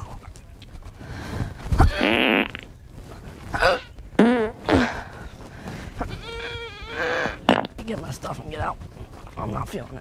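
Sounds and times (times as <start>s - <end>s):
fart sound effects: 1.8s - 2.7s, 3.6s - 4.9s, 7.0s - 7.8s.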